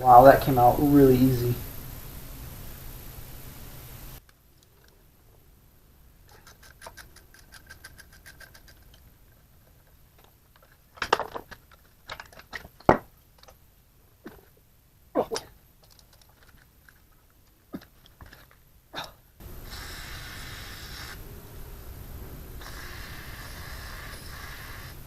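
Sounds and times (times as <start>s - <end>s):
ratchet wrench clicking: 6.3s - 9.0s.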